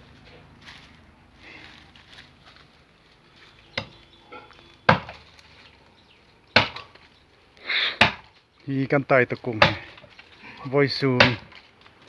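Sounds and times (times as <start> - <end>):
hand tool chopping wood: 3.7 - 4.0, 4.8 - 5.4, 6.5 - 7.1, 8.0 - 8.4, 9.4 - 12.0.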